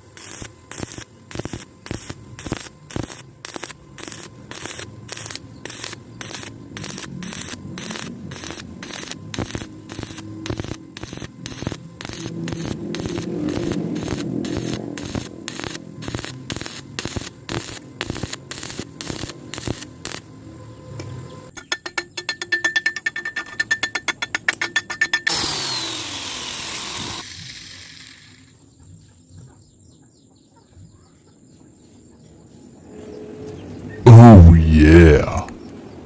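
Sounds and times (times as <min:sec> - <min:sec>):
welding arc crackling: 0:00.0 - 0:20.3.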